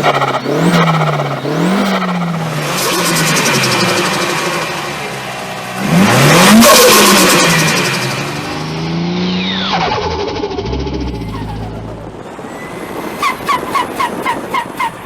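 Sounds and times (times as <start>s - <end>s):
turbo compressor surge flutter: 0.0s - 15.0s
turbocharged car engine revving: 0.0s - 15.0s
falling whistle: 11.1s - 15.0s.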